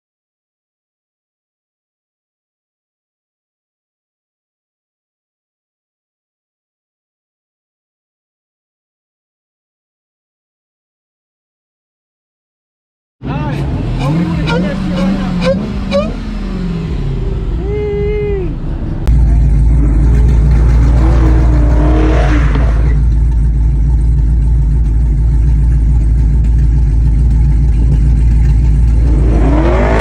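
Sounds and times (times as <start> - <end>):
car engines revving and passing: 13.2 - 30.0
loud low rumble: 13.3 - 30.0.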